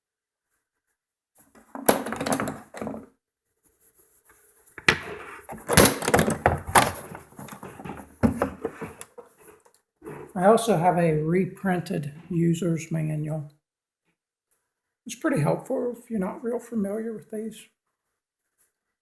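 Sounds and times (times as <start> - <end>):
case knocking and thunking: 1.7 - 3.0, 4.8 - 9.1.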